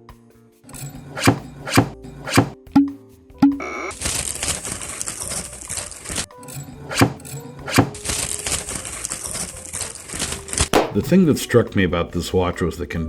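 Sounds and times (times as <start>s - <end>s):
instrumental music with drum hits: 0.8s - 4.6s, 6.3s - 8.4s, 10.7s - 11.6s.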